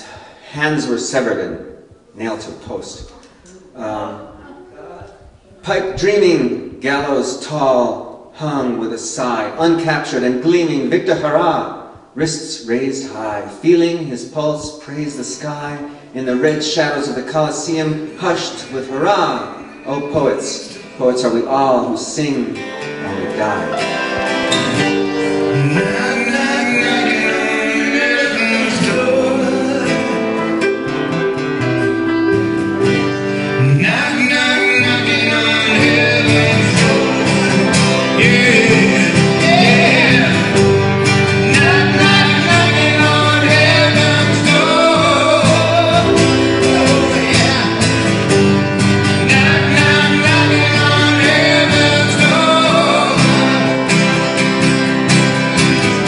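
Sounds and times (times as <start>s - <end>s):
guitar: 0.0s - 56.0s
person singing: 22.6s - 31.1s, 33.0s - 54.2s.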